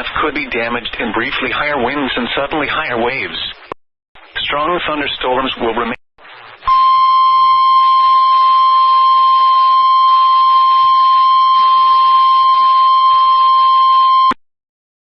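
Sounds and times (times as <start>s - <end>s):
loud steady high beep: 6.6s - 14.4s.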